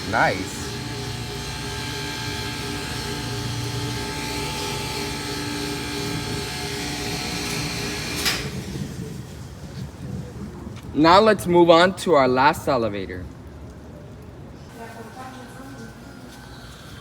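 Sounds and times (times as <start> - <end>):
elevator motor whine and hum: 0.0 - 9.2.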